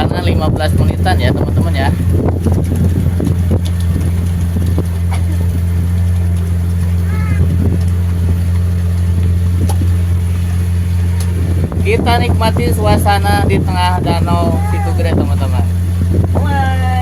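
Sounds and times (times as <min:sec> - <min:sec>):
boat motor droning: 0:00.0 - 0:17.0
faint voice: 0:07.0 - 0:07.5, 0:14.4 - 0:15.2.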